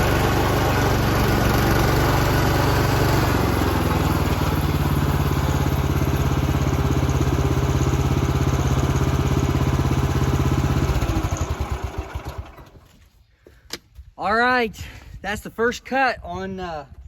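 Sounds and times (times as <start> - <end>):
sawmill engine running: 0.0 - 12.8.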